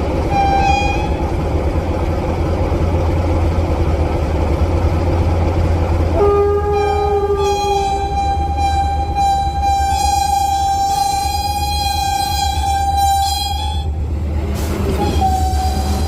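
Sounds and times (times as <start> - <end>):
train horn: 0.3 - 1.3, 6.1 - 13.9, 15.0 - 16.0.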